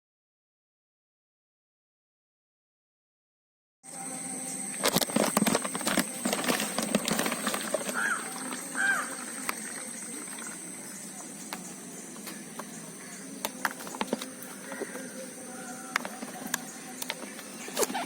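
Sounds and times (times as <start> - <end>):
short bird calls: 7.9 - 9.4.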